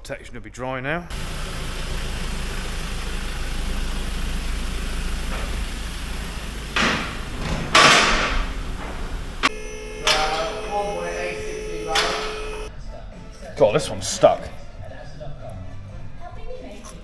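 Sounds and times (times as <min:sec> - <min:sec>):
loud rushes of noise: 0:01.1 - 0:12.7
vehicle engine running: 0:01.1 - 0:12.7.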